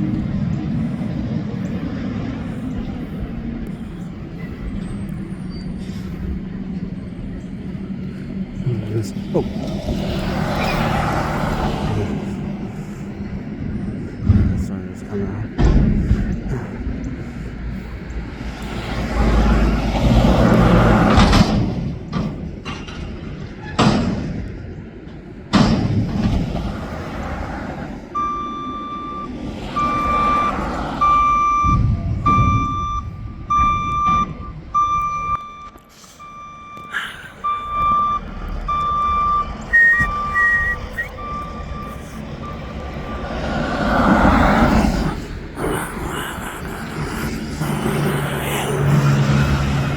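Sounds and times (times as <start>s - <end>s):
truck engine running: 0.0s - 23.5s, 24.1s - 49.9s
reversing alarm beeping: 28.1s - 44.6s.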